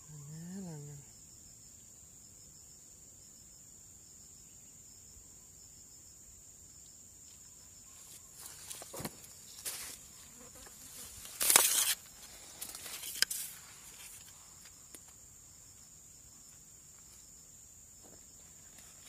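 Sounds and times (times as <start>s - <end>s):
insects droning: 0.0s - 19.0s
rustling noise: 8.4s - 14.8s.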